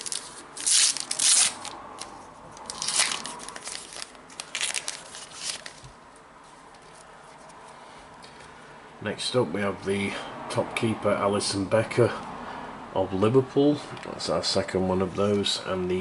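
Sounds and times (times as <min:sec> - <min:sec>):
foil wrapper tearing and crinkling: 0:00.0 - 0:01.8, 0:02.6 - 0:05.9
light handling of wrapper: 0:00.0 - 0:06.0.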